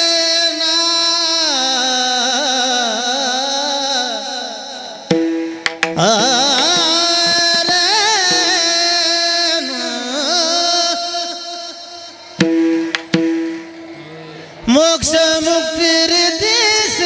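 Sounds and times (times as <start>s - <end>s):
drum strokes: 5.1s - 8.9s, 12.4s - 14.4s
person singing: 5.3s - 17.0s.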